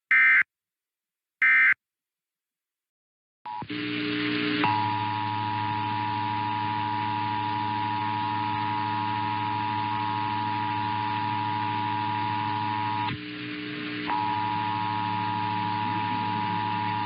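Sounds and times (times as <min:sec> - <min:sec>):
two-tone alert signal: 0:00.1 - 0:00.4, 0:01.4 - 0:01.8.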